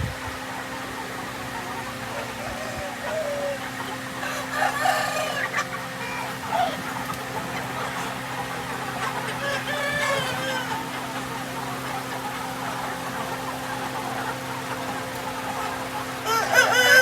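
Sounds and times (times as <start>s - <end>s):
chickens clucking: 0.0s - 17.0s
rooster crowing: 4.2s - 6.2s, 9.3s - 10.7s, 16.2s - 17.0s.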